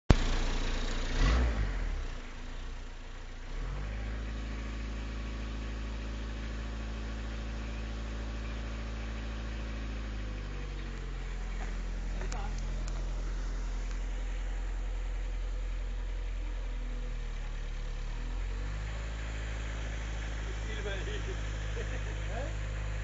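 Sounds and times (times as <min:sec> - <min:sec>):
car engine revving and idling: 0:00.1 - 0:23.0.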